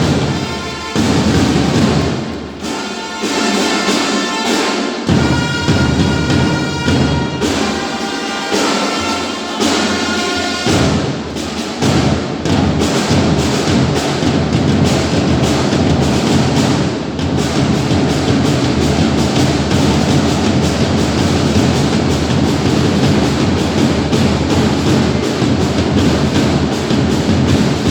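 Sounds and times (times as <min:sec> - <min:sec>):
orchestral music held notes: 0:00.0 - 0:11.1
driving percussion beat: 0:00.0 - 0:27.9.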